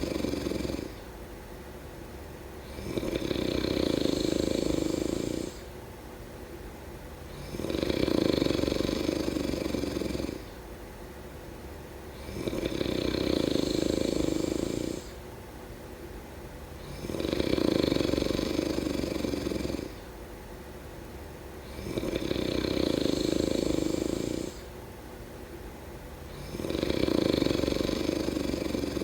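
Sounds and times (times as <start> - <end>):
person snoring: 0.0 - 1.0, 2.6 - 5.6, 7.3 - 10.5, 12.2 - 15.2, 16.8 - 20.0, 21.6 - 24.7, 26.3 - 29.0.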